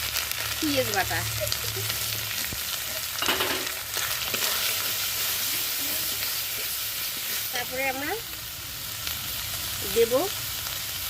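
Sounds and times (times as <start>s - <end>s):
food sizzling in hot oil: 0.0s - 11.0s
stirring scrapes: 2.4s - 7.8s.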